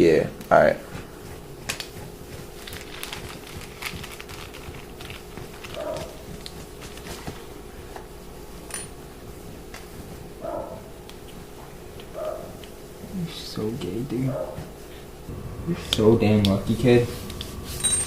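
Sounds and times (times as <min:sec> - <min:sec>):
faint steady hum: 0:03.8 - 0:18.0
brief whine: 0:15.3 - 0:18.0.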